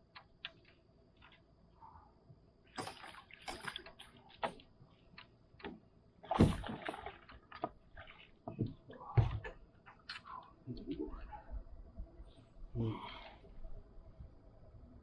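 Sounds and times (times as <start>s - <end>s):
water sloshing and splashing: 2.6s - 5.4s, 6.2s - 11.5s.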